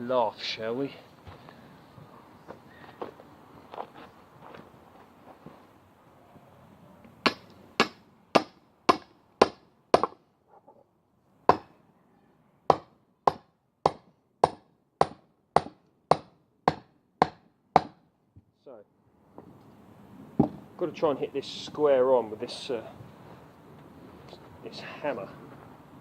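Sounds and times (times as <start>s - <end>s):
hammer tapping splitting wedge: 7.2s - 10.2s.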